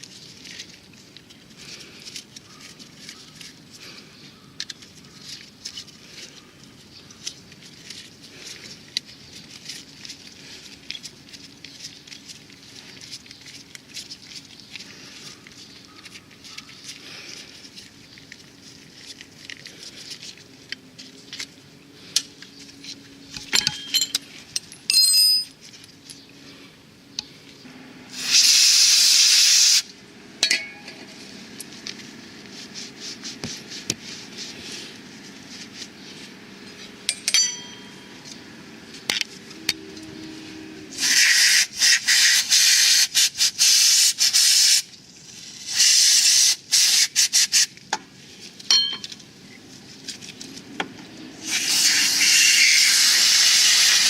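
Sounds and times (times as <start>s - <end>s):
small parts and tools clinking: 4.6s - 26.3s, 30.4s - 32.1s, 36.8s - 39.3s, 48.5s - 49.3s
spray hiss: 28.1s - 29.9s, 45.5s - 47.7s, 51.5s - 54.0s.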